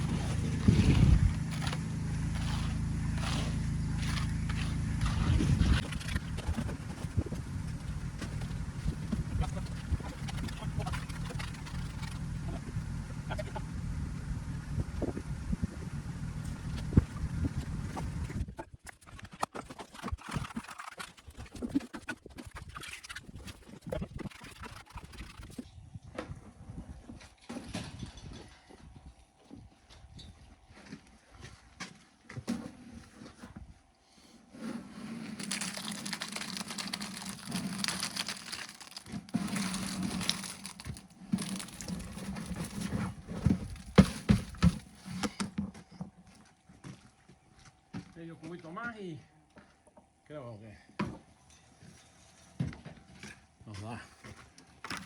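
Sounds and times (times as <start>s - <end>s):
knocks and scrapes on wet concrete: 0.0s - 12.6s, 34.6s - 45.5s.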